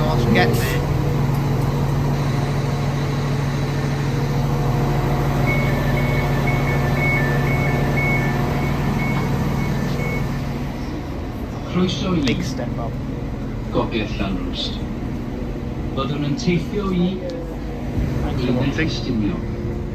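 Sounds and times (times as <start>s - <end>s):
train diesel engine idling: 0.0s - 19.9s
two-tone electronic beep: 5.4s - 10.3s.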